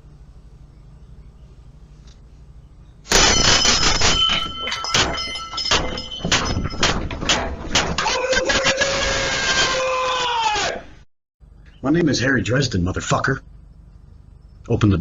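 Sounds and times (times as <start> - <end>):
high ringing squeal: 3.1 - 7.2
loud banging and crashing: 3.1 - 8.1.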